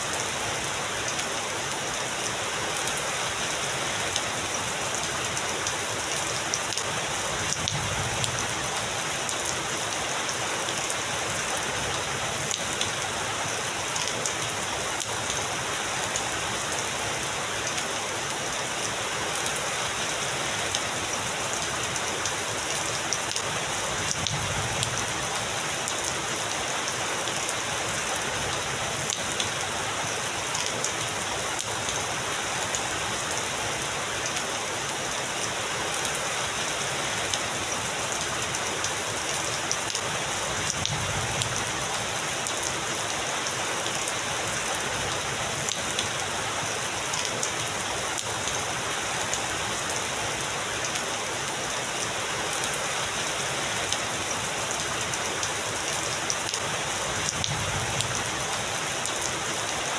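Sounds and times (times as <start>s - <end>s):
heavy rain spattering: 0.0s - 59.9s.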